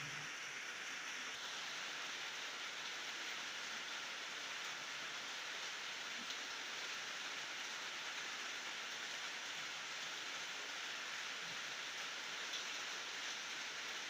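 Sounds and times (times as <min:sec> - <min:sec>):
steady rain hiss: 0:00.0 - 0:14.0
faint raindrop ticks: 0:06.1 - 0:06.5.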